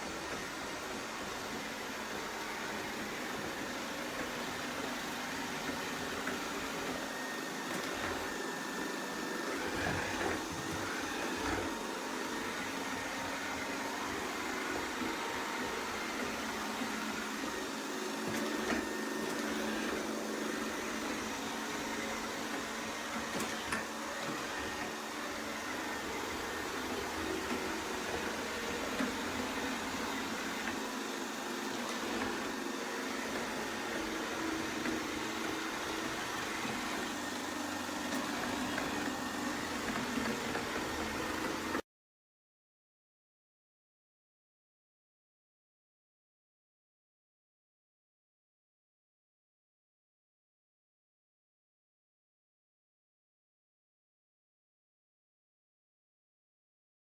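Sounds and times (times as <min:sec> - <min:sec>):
robot vacuum whirring: 0:00.0 - 0:41.8.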